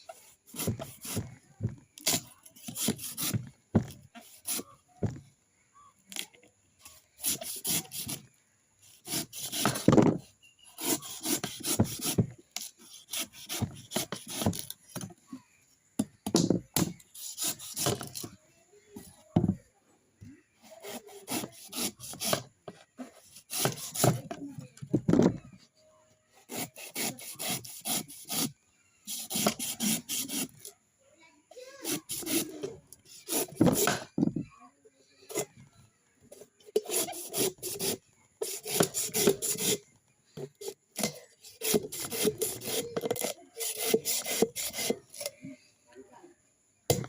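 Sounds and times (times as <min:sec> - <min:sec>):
coconut being scraped: 0:00.0 - 0:05.2, 0:07.2 - 0:14.8, 0:16.8 - 0:18.3, 0:20.6 - 0:24.4, 0:26.4 - 0:30.7, 0:31.6 - 0:34.1, 0:36.3 - 0:45.4.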